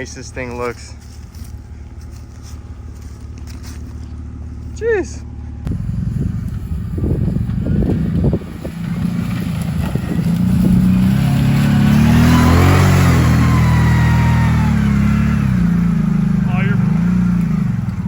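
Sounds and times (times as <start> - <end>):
car driving past: 5.6 - 18.0.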